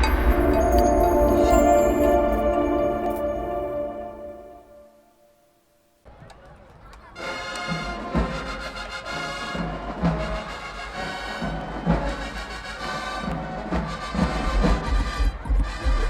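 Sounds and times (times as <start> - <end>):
brass band chords: 0.0 - 4.9.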